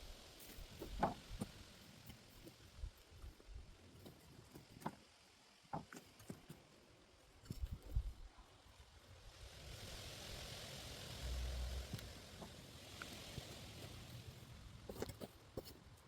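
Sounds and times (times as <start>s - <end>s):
steady hiss: 8.4s - 16.0s.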